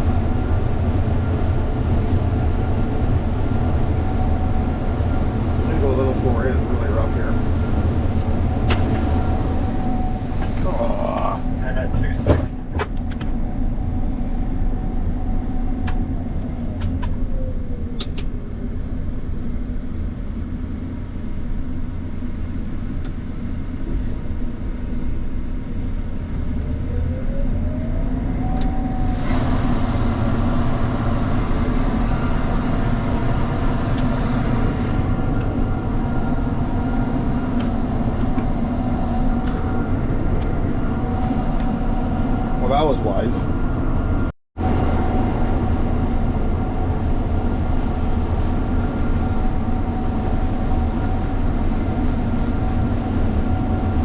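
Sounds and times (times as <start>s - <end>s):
diesel engine running under load: 0.0s - 54.0s
hiss: 10.2s - 11.8s, 29.0s - 38.3s.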